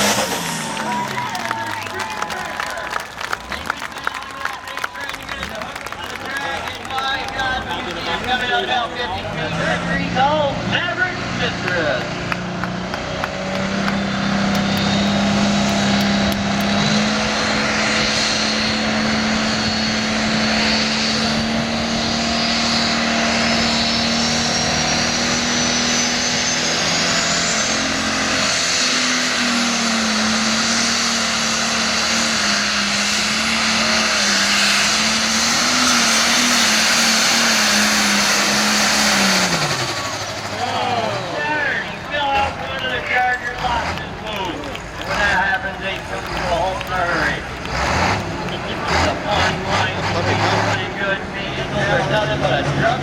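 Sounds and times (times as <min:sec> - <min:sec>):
tractor diesel engine at full throttle: 0:00.0 - 0:53.0.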